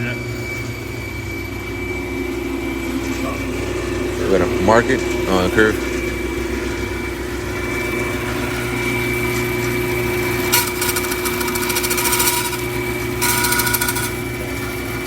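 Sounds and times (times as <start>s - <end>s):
bandsaw whistling: 10.2s - 15.0s
bandsaw cutting wood: 10.4s - 15.0s.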